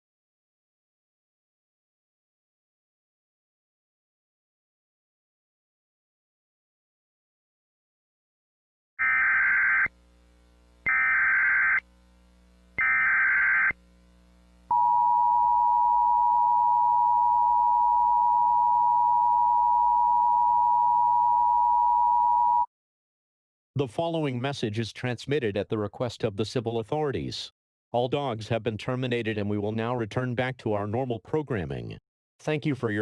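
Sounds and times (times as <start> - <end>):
buzzy digital data bursts: 9.0 - 14.6
two-tone attention signal: 14.7 - 22.7.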